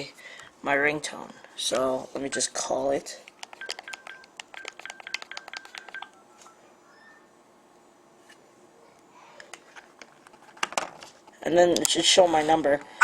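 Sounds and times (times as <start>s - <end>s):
telephone keypad beeps: 3.6s - 6.6s.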